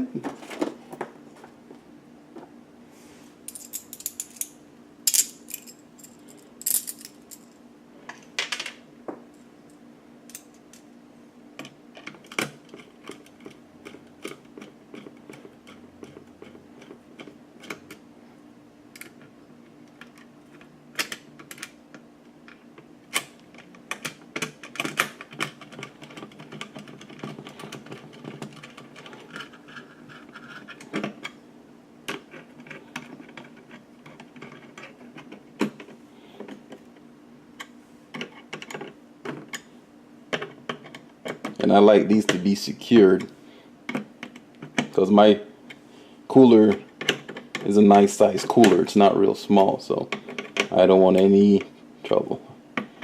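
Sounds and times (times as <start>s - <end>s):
small metal parts handled: 3.5s - 4.5s, 5.1s - 7.6s.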